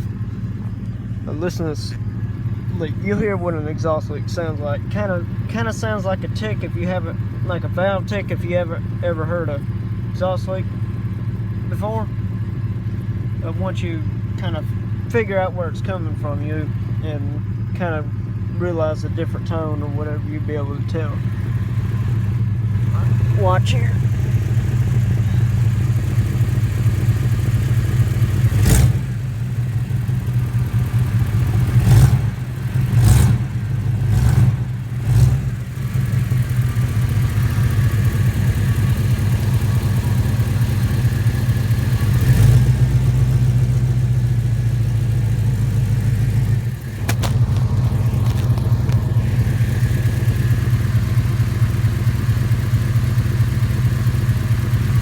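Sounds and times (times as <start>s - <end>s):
truck engine idling with ticking: 0.0s - 55.0s
sharp engine knocks: 46.9s - 50.4s.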